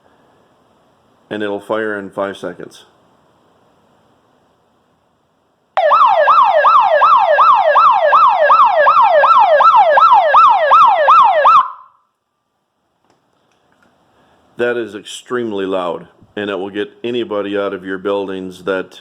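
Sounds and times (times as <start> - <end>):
alarm siren sweeping in pitch: 5.8 - 12.0.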